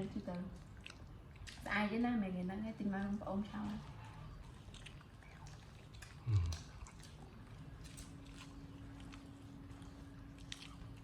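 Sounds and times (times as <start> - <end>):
faint steady hum: 0.0 - 11.0
monkey chewing and biting: 3.7 - 11.0.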